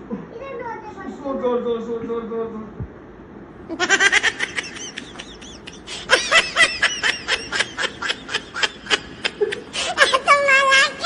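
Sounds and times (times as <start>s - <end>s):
person laughing: 3.7s - 10.3s.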